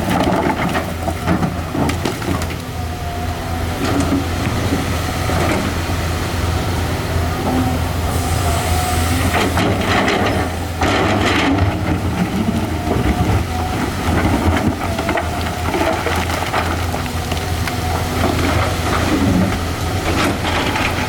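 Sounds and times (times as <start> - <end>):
excavator diesel engine humming: 0.0 - 21.0
rock clattering: 10.8 - 21.0.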